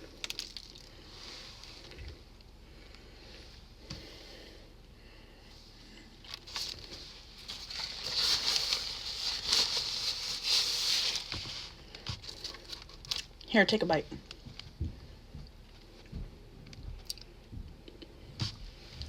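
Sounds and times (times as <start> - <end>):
chewing bagel: 0.0 - 1.1.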